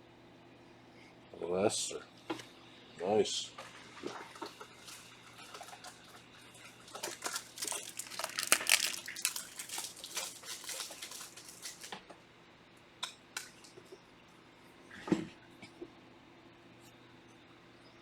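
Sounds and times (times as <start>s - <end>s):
wrapper crinkling: 6.9s - 12.0s
cards rustling: 7.0s - 11.9s.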